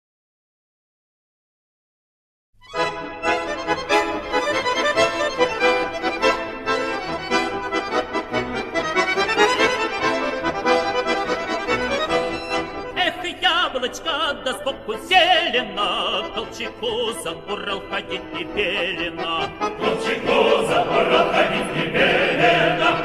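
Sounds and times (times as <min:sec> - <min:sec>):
accordion folk tune: 0:02.6 - 0:23.0.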